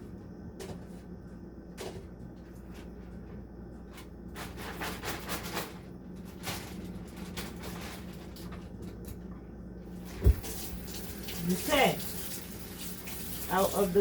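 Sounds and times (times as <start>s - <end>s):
steady low hum: 0.0s - 11.2s
kitchen things clicking and scraping: 3.9s - 9.2s.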